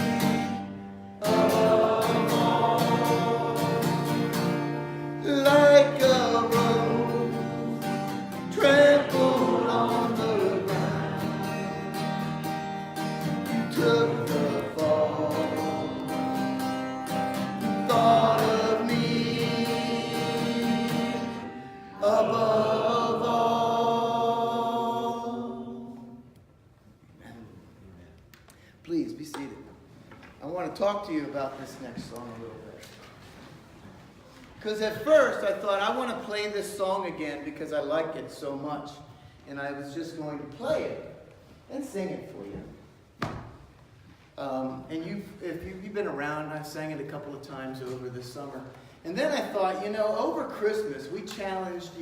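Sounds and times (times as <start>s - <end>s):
guitar accompaniment: 0.0s - 25.6s
gospel singing: 0.0s - 26.5s.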